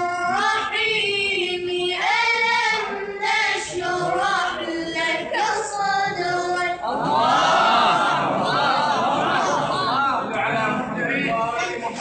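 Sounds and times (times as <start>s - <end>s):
child chanting: 0.0s - 10.0s.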